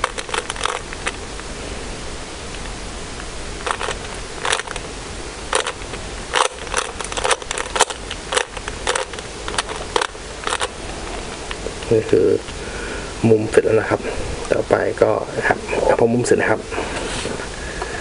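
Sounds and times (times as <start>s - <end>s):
plastic puzzle cube clicking: 0.0s - 1.2s, 3.6s - 4.8s, 5.5s - 10.7s.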